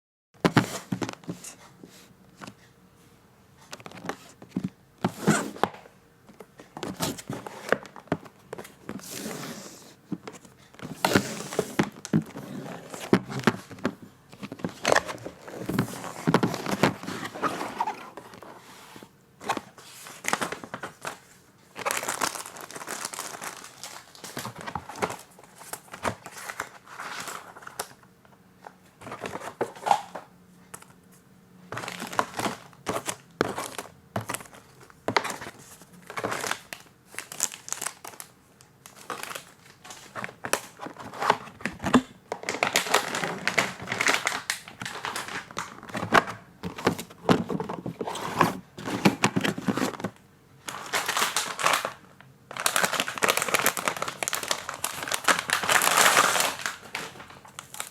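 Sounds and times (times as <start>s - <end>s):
packaging crinkling and rustling: 3.6s - 31.0s, 31.7s - 57.9s.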